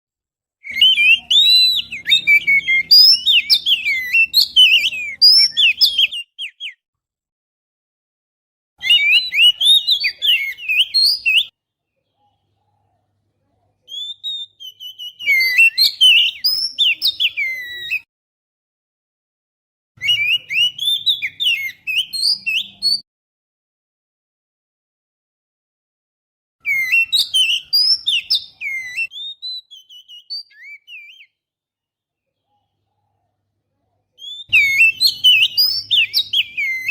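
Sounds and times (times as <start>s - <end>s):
bird whistled song: 0.6s - 6.8s, 8.8s - 11.5s, 13.9s - 18.1s, 20.0s - 23.0s, 26.6s - 31.4s, 34.2s - 36.9s.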